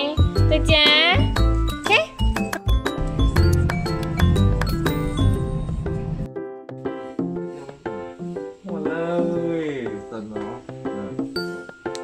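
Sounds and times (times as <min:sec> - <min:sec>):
heavy bass: 0:02.4 - 0:06.3.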